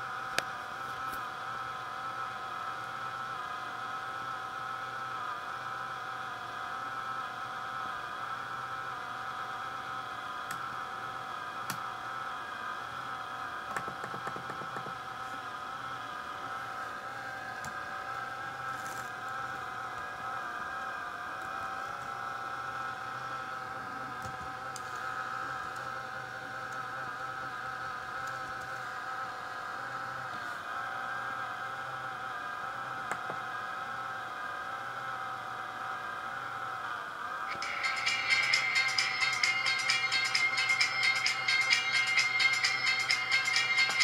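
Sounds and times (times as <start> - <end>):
laptop fan whining: 0.0 - 44.0
low hum: 37.5 - 44.0.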